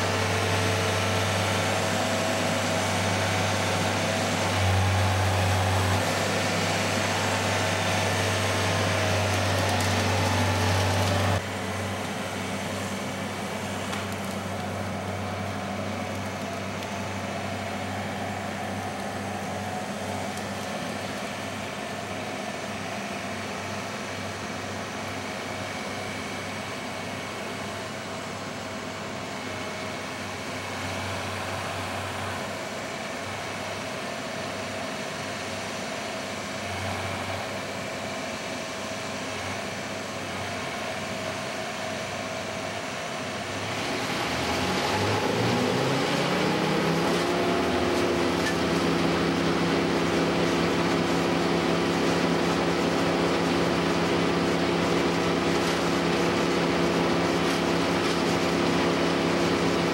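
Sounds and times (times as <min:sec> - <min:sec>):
engine revving up: 0:43.6 - 0:51.4.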